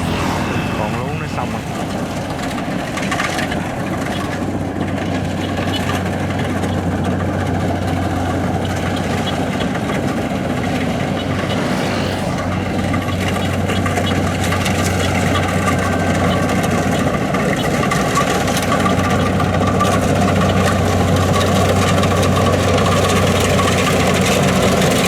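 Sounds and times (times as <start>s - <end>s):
diesel engine running steadily: 0.0s - 25.0s.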